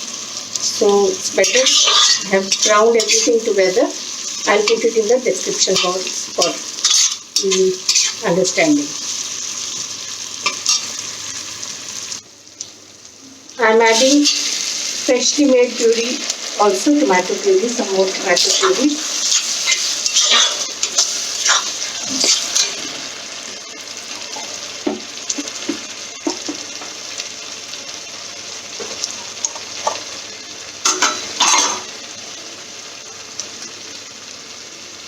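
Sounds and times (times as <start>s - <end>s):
sauce sizzling in a pan: 0.0s - 35.0s
spoon scraping and knocking pan: 1.4s - 3.3s, 5.6s - 8.2s, 18.4s - 23.0s, 30.9s - 31.9s.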